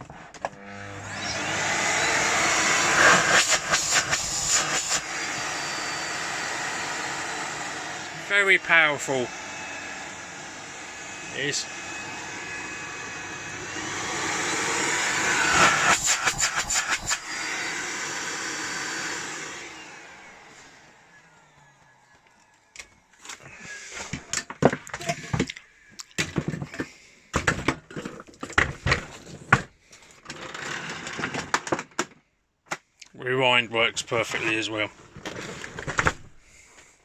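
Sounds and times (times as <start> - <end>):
vacuum cleaner running: 0.0 - 25.4
motor spinning down: 0.6 - 23.1.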